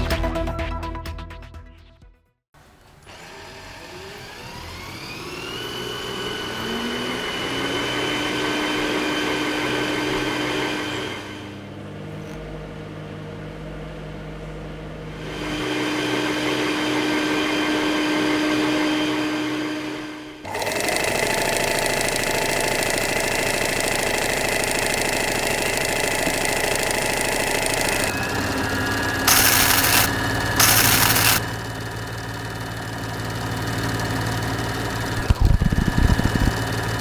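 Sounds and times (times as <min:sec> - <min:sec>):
electric motor whining: 0:03.1 - 0:10.4, 0:25.8 - 0:37.0.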